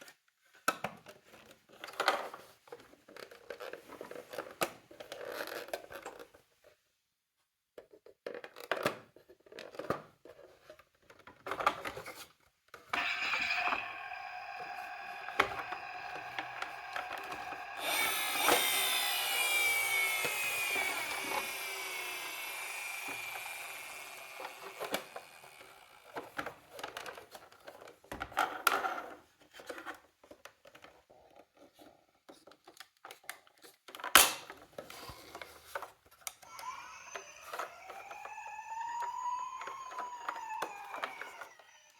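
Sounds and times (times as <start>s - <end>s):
toy electronic siren: 13.0s - 26.5s, 36.5s - 41.9s
toy wheels whirring: 13.0s - 27.0s, 36.4s - 41.9s.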